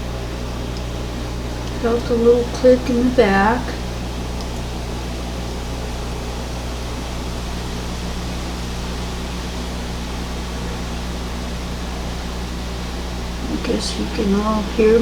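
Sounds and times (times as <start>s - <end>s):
laundry machine running: 0.0s - 15.0s.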